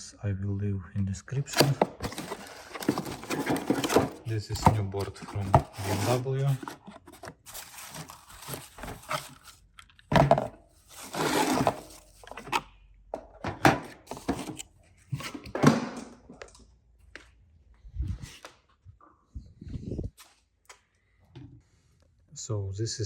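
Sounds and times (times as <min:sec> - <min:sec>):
wrapping rustling: 0:01.5 - 0:09.6, 0:10.9 - 0:12.3
plastic parts knocking and clicking: 0:01.5 - 0:14.6.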